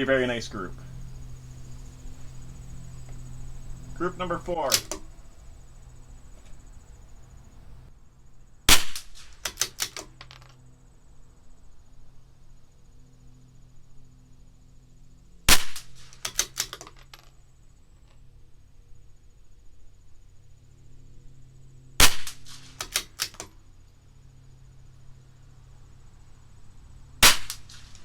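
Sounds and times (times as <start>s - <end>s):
rifle shots: 4.2s - 5.1s, 8.7s - 10.2s, 15.5s - 16.8s, 22.0s - 23.4s, 27.2s - 28.0s
rifle bolt metallic clicks: 4.6s - 5.1s, 9.0s - 10.5s, 15.8s - 17.2s, 22.3s - 23.5s.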